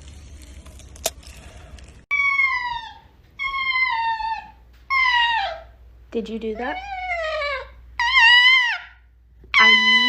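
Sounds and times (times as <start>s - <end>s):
pet crying: 2.1s - 5.8s, 6.6s - 10.0s.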